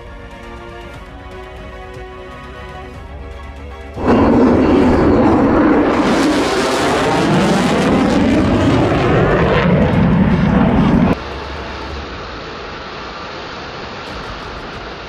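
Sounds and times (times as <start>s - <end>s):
jet aircraft flying past: 4.0s - 15.0s.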